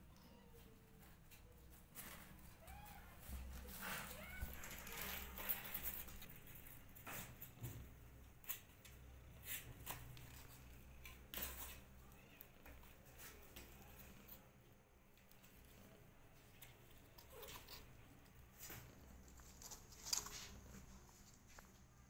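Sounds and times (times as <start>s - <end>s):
kittens rustling and scratching: 0.0s - 22.0s.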